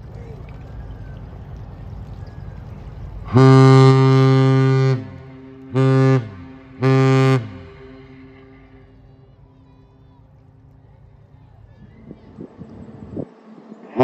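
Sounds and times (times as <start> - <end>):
deep ship horn blasts: 2.6 - 9.6, 13.7 - 14.0.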